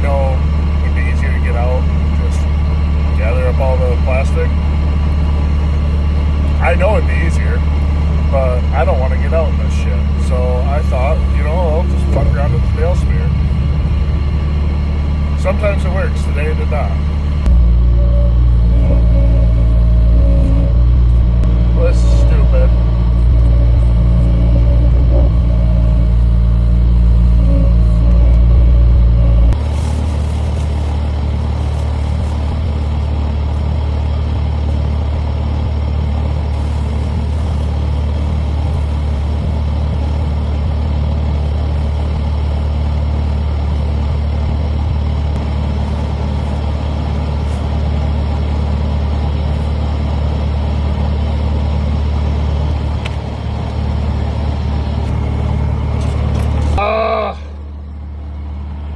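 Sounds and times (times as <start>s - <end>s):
skid steer loader engine: 0.0s - 58.9s
rising and falling tone: 10.8s - 29.6s.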